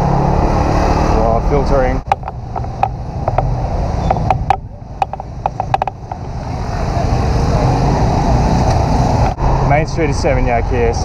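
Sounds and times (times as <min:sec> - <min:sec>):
wind and road noise hiss: 0:00.6 - 0:11.0
scooter engine rumble: 0:01.6 - 0:09.4
sharp clicks: 0:02.0 - 0:06.3.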